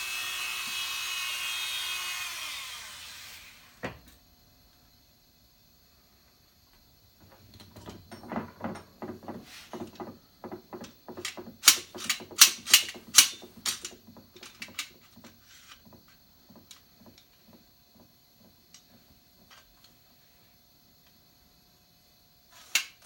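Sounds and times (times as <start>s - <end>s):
knocks and taps: 7.2s - 19.6s.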